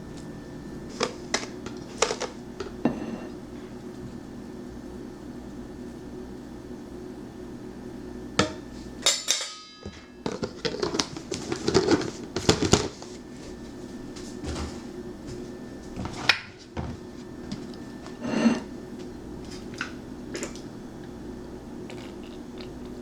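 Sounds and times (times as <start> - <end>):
steady low hum: 0.0 - 23.0
metal pans clattering: 0.9 - 3.2, 8.4 - 13.2.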